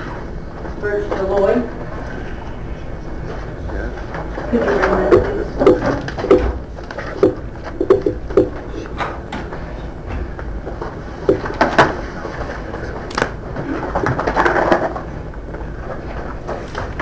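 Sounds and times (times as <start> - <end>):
steady low hum: 0.0 - 17.0
sharp knocks and clicks: 5.1 - 8.6, 11.3 - 11.9.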